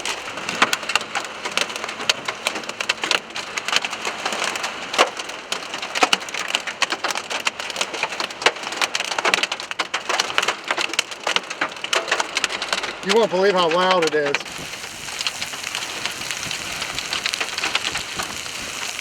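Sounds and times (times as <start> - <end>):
hail pelting a car roof: 0.0 - 19.0
heavy rain hiss: 13.0 - 19.0.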